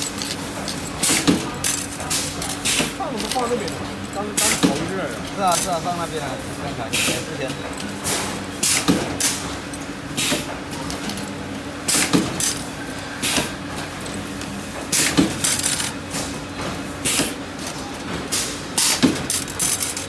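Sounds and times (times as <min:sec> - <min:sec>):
steady electrical hum: 0:00.0 - 0:20.0
compressed air hiss: 0:06.9 - 0:07.3.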